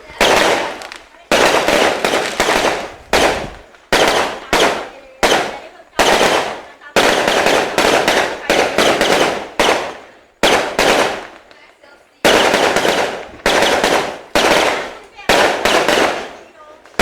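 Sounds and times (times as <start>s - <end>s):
fireworks bangs and crackling: 0.0s - 17.0s.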